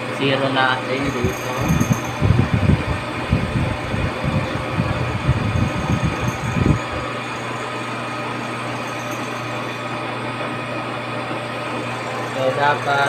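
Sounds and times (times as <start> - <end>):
milling machine humming: 0.0 - 13.0
low rumbling: 1.1 - 7.2.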